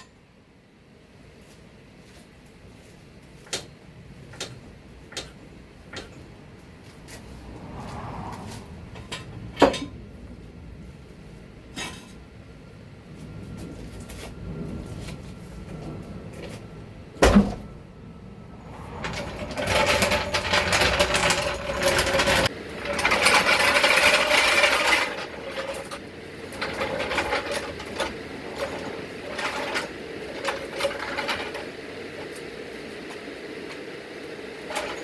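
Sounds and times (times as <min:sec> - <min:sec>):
steady hum: 0:00.0 - 0:35.0
car jack rattling: 0:18.6 - 0:32.3.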